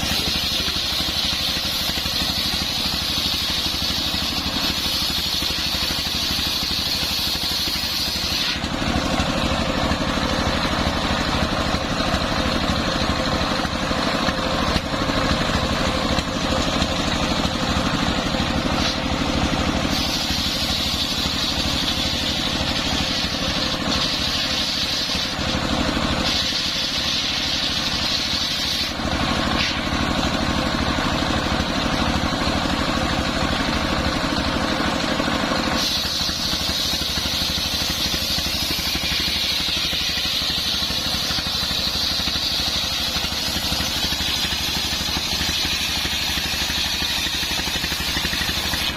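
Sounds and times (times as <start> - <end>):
circular sawmill sawing wood: 0.0 - 48.9
high saw whine: 0.0 - 48.9.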